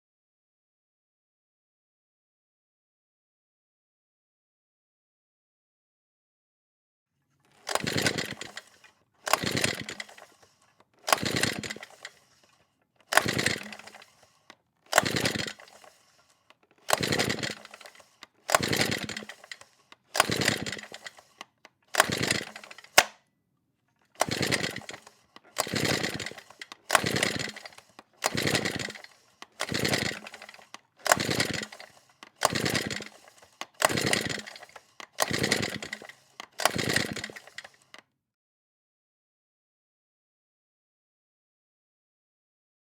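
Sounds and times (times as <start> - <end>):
recoil pull-start cord yanked: 7.5 - 23.2, 24.0 - 38.0
sharp click: 21.9 - 23.2.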